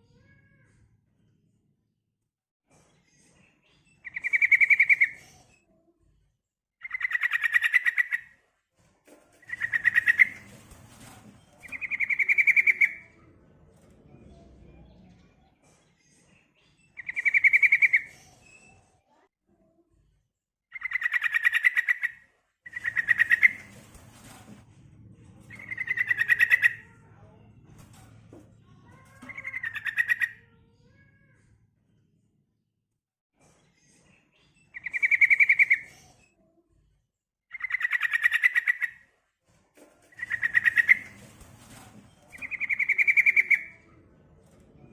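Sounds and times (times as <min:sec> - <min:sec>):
bird trilled calls: 0:06.8 - 0:08.2, 0:40.2 - 0:41.2, 0:42.4 - 0:43.7.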